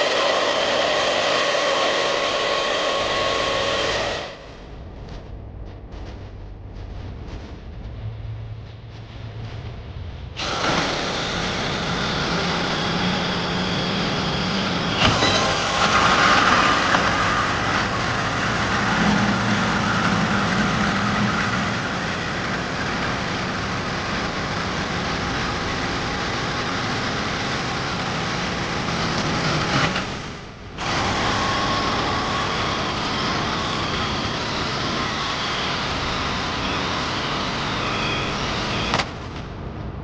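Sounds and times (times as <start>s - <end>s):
band saw cutting metal: 10.4s - 30.2s, 30.8s - 39.2s.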